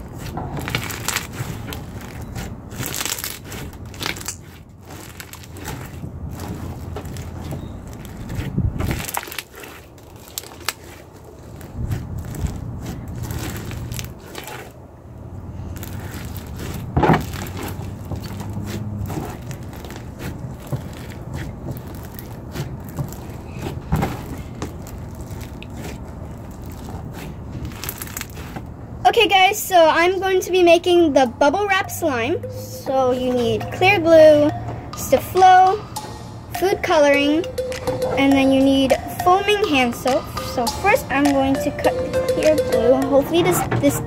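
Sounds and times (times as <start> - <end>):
beads crunching and crackling: 0.0 - 14.8, 15.5 - 28.8
slime squished by hand: 0.0 - 14.8, 15.6 - 28.8.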